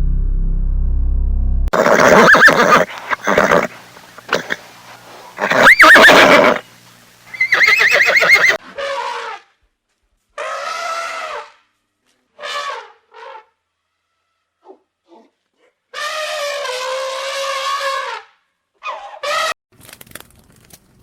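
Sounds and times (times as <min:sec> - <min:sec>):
horse whinnying: 0:01.7 - 0:06.7, 0:07.3 - 0:08.6
short quiet animal calls: 0:01.8 - 0:06.6.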